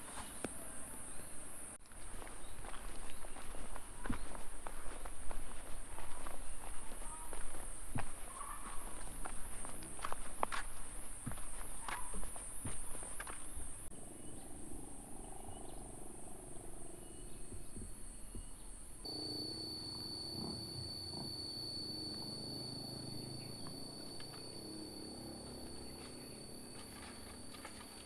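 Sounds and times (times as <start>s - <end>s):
insect high-pitched whine: 8.9s - 28.0s
insect fast-pulsing trill: 19.0s - 28.0s.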